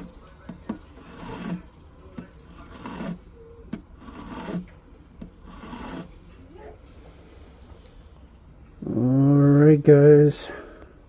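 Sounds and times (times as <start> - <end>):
file clicking on metal: 0.0 - 6.1
file scraping metal ring: 0.0 - 6.3.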